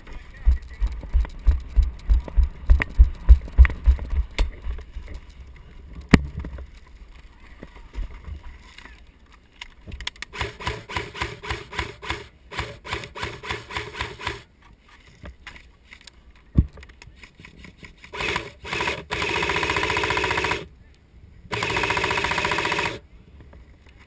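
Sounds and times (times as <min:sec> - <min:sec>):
airsoft gunfire: 0:10.3 - 0:14.5, 0:18.2 - 0:20.7, 0:21.5 - 0:23.0.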